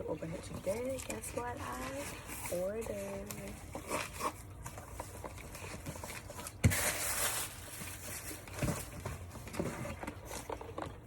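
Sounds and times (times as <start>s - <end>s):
packaging rustling: 1.0s - 11.0s.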